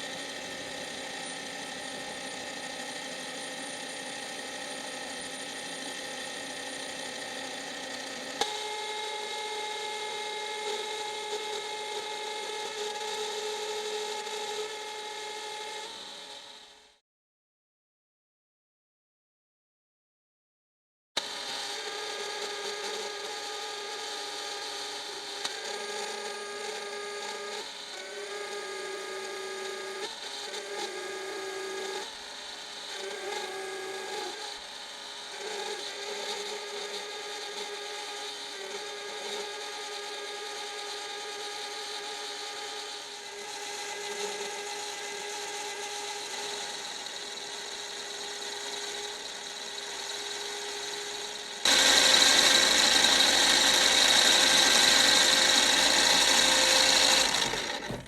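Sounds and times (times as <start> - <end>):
lathe motor whine: 0.0 - 17.0, 21.2 - 58.0.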